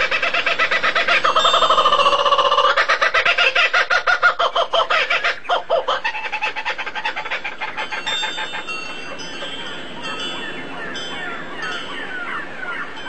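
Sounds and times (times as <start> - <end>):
bird calling with harsh notes: 0.0 - 13.0.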